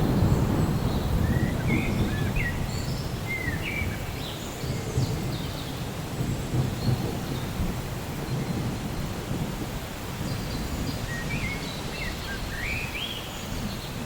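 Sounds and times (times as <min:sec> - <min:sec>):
distant thunder rumble: 0:00.0 - 0:04.0, 0:04.6 - 0:11.1.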